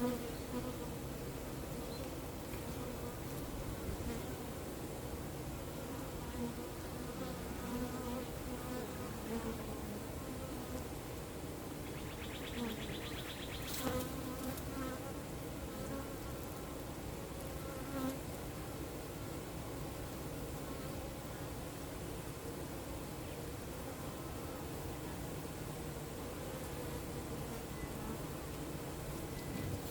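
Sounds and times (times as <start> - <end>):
bees droning close by: 11.9 - 21.6.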